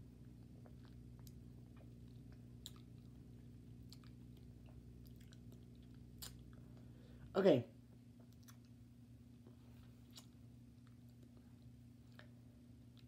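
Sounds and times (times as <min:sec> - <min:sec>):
steady low hum: 0:00.0 - 0:13.0
wet mouth clicks and smacks: 0:03.9 - 0:06.5.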